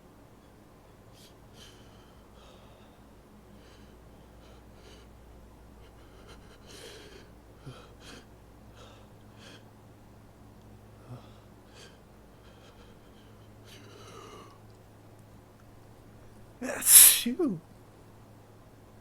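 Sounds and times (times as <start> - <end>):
person gasping breaths: 16.6 - 17.6.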